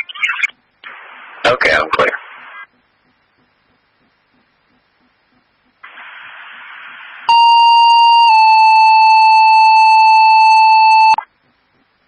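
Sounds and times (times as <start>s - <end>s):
radio hiss: 0.0s - 3.1s, 5.0s - 7.3s.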